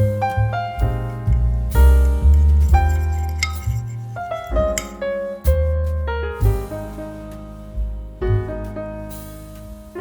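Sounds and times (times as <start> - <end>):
bass line: 0.0 - 10.0
piano-like keyboard notes: 0.0 - 10.0.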